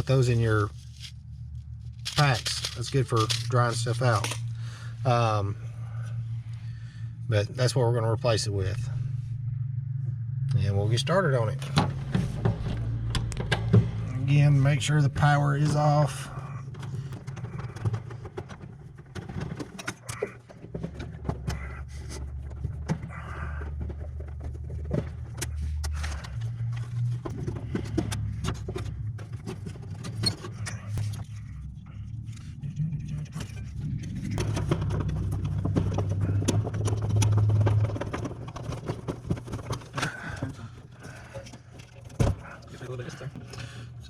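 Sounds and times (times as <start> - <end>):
clicks and scrapes of wires: 0.0 - 4.6, 15.2 - 44.0
steady low hum: 0.0 - 44.0.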